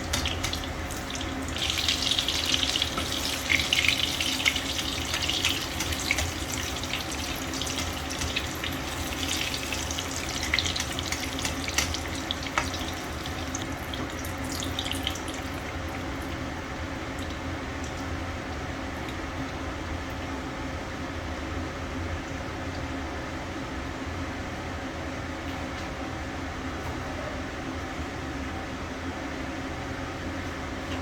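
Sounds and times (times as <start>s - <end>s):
tap water running into sink: 0.0s - 16.5s.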